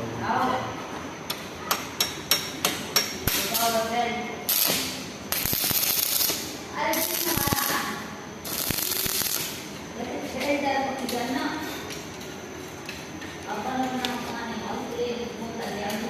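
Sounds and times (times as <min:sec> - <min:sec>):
arc welding crackle: 0:03.1 - 0:12.0.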